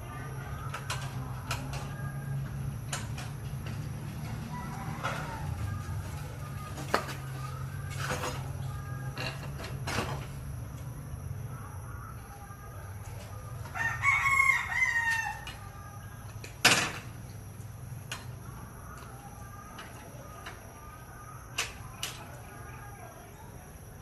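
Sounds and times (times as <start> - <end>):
rooster crowing: 4.1 - 6.4, 13.6 - 16.1.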